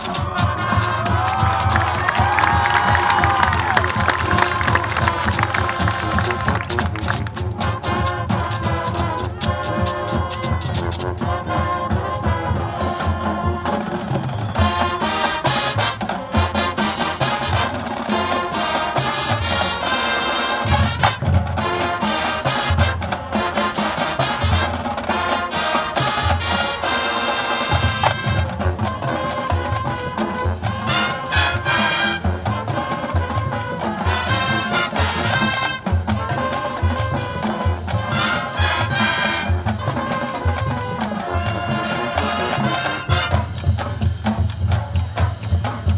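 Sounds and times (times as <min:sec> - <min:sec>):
steady drum beat: 0:00.0 - 0:11.4, 0:12.1 - 0:45.9
marching band playing: 0:00.0 - 0:45.9
trumpets and trombones: 0:00.0 - 0:45.9.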